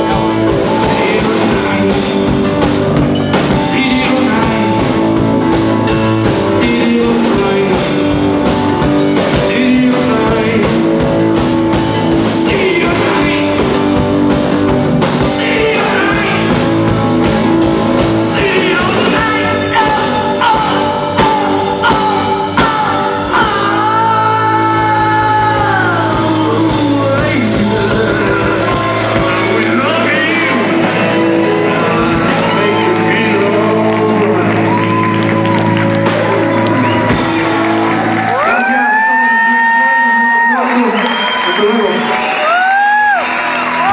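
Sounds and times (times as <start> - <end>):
person singing: 0.0 - 40.9
rock band playing live: 0.0 - 43.9.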